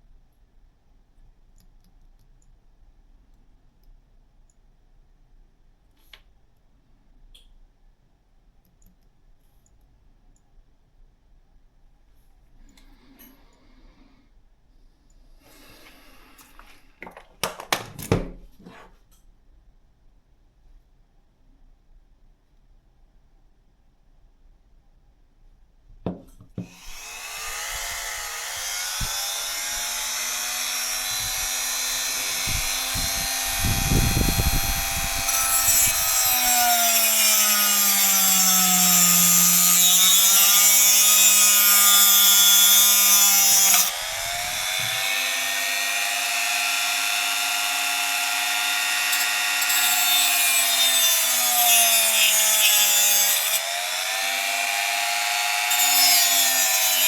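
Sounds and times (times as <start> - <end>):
small electric motor whining: 26.6 - 56.8.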